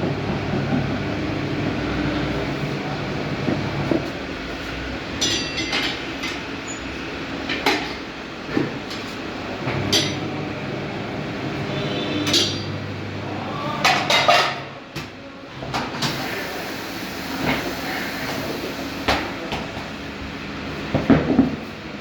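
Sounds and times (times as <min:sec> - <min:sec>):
metal tools clinking on metal: 0:05.2 - 0:06.0.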